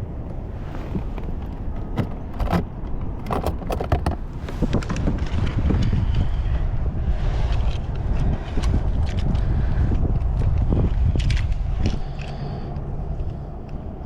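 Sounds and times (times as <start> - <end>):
wind rumbling on microphone: 0.0 - 14.0
fishing gear clicking and rattling: 0.8 - 4.9.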